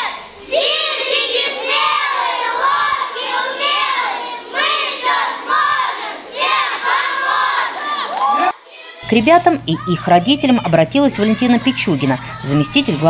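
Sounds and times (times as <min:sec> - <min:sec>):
children chanting in unison: 0:00.0 - 0:09.1.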